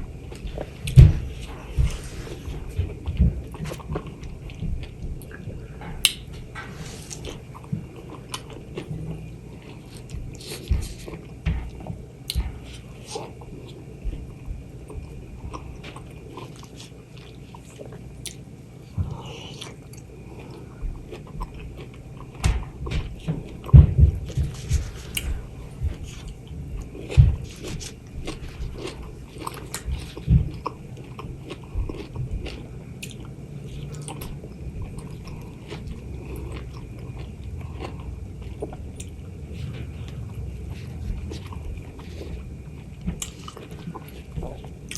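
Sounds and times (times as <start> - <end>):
person biting and chewing mango: 24.2 - 44.9.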